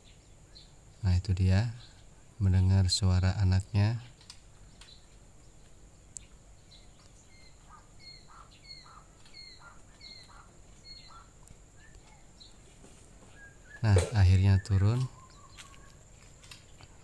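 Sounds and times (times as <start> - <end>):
quail chirping: 6.6 - 12.6, 13.3 - 16.0.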